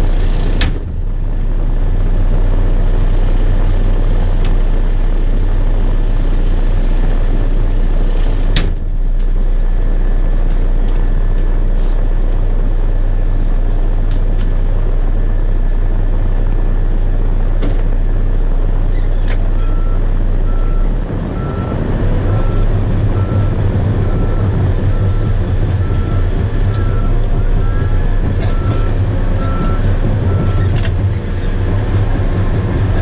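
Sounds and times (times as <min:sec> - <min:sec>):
bulldozer diesel engine: 0:00.0 - 0:33.0
backup alarm beeping: 0:19.6 - 0:31.0.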